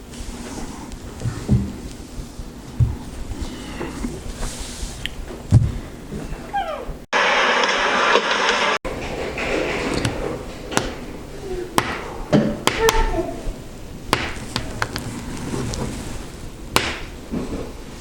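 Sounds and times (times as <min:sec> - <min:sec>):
loud hiss: 0:07.2 - 0:08.8.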